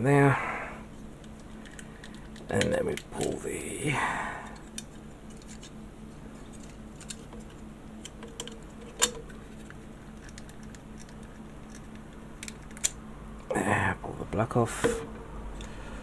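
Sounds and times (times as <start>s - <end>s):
faint steady hum: 0.0s - 16.0s
plastic parts clicking and tapping: 1.2s - 3.4s, 6.5s - 13.0s.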